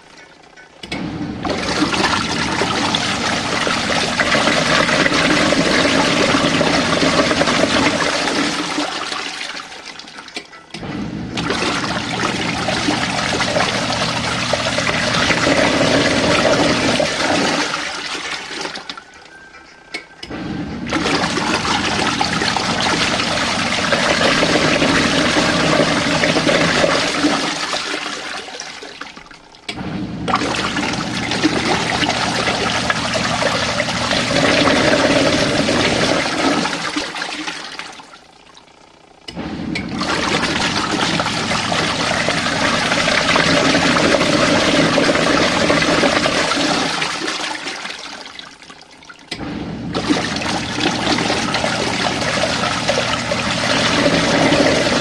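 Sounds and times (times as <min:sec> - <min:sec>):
washing machine sloshing water: 0:00.0 - 0:19.6, 0:20.6 - 0:55.0
low motor hum: 0:20.2 - 0:27.2, 0:49.3 - 0:55.0.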